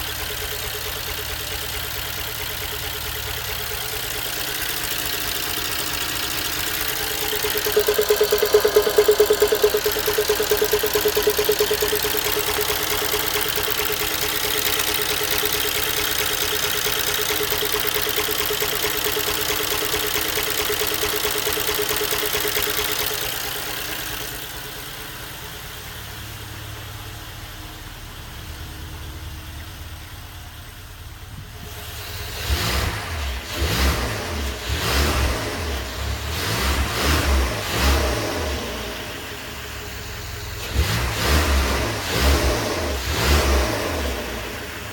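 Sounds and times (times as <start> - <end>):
engine rapidly pulsing tone: 4.5 - 23.1.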